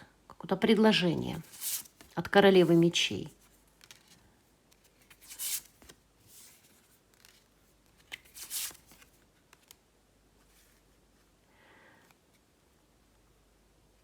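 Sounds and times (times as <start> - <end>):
cards sliding swishes: 1.4 - 2.1, 3.8 - 9.7.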